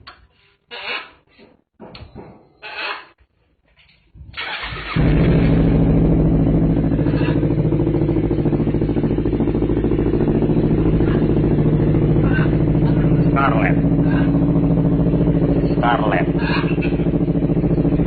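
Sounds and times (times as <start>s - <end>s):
small engine idling: 4.4s - 18.0s.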